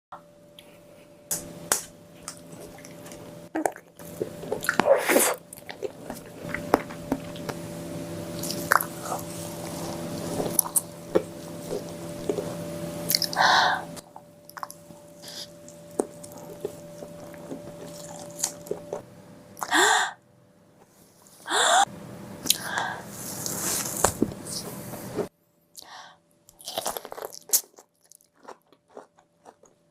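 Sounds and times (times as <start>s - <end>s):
low steady hum: 0.1s - 27.4s
chewing and eating mouth sounds: 2.2s - 7.6s, 8.4s - 19.0s, 26.5s - 29.9s.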